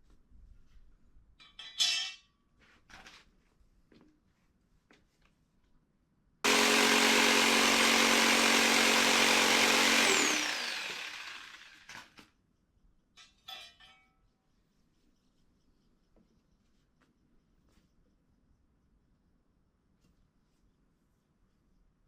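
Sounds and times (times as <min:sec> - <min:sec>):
electric power tool whirring: 0:06.5 - 0:12.1.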